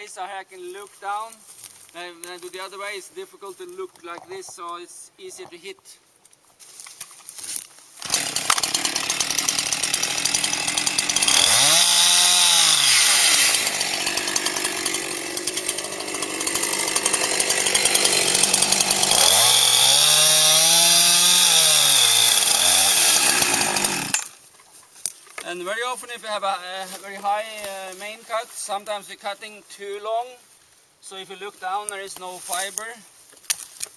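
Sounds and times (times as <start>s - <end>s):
chainsaw cutting tree trunk: 8.0s - 24.4s.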